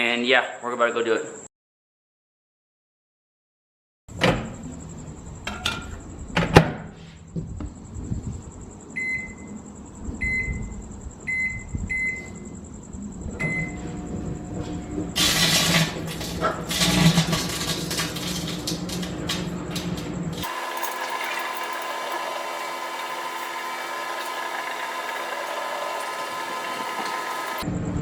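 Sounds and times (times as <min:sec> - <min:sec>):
keypad beeps: 0:11.3 - 0:12.2
microwave oven humming: 0:13.4 - 0:28.0.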